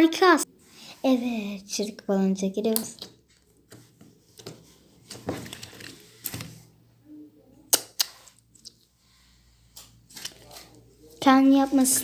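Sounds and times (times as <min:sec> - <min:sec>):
slime squishing: 0:09.8 - 0:12.0.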